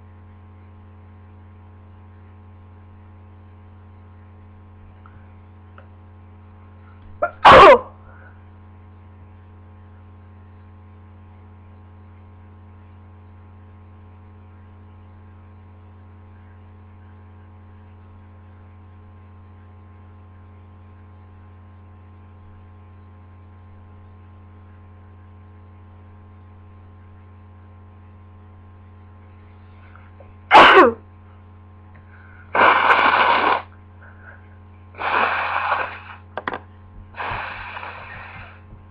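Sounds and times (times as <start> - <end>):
steady electrical hum: 0.0 - 38.9
loud sharp sneezes: 7.2 - 8.0, 30.5 - 31.0, 32.6 - 33.7, 35.0 - 36.2
breathy exhale: 37.2 - 38.6.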